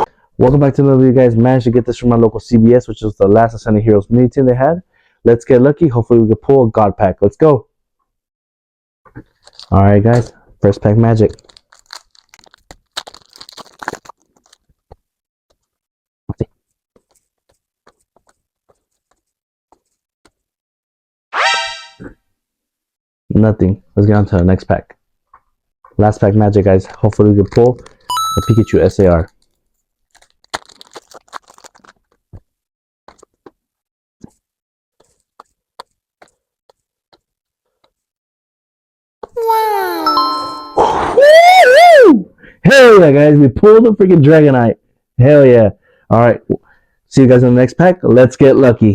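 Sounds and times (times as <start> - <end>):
foil pack crinkling: 9.3 - 9.8, 11.1 - 15.0, 28.9 - 32.4
cards ticking when handled: 27.0 - 32.2
brief pitched sound: 40.0 - 41.2.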